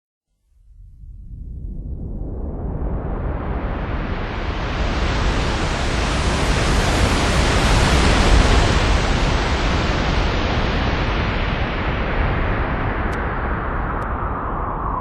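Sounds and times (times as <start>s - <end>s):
sea surf rushing: 3.7s - 15.0s.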